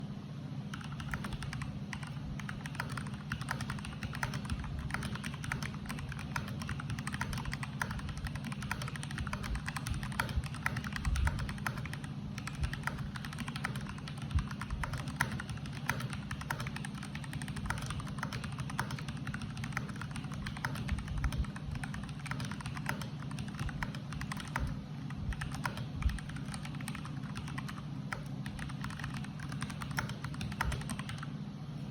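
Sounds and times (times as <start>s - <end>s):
mechanical keyboard typing: 0.7s - 31.3s.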